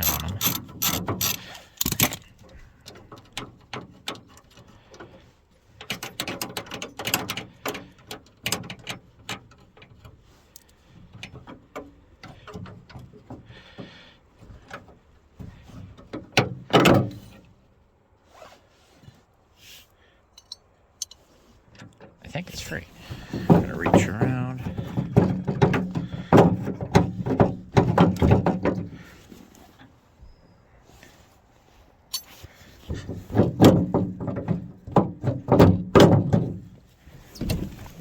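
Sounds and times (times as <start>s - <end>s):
ratchet wrench clicking: 0.0s - 2.2s.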